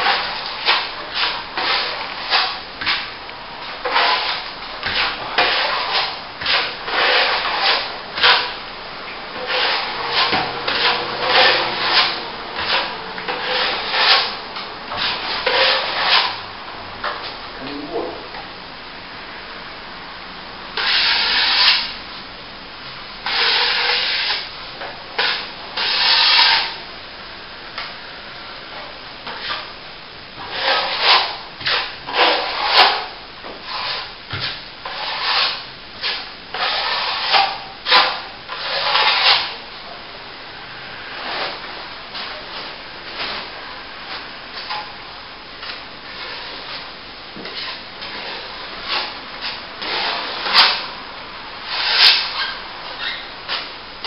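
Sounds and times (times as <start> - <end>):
trowel scraping plaster: 0.0 - 3.1, 3.7 - 8.6, 9.4 - 16.4, 20.8 - 21.9, 23.2 - 24.5, 25.2 - 26.8, 30.4 - 39.6, 45.6 - 50.9, 51.6 - 53.7.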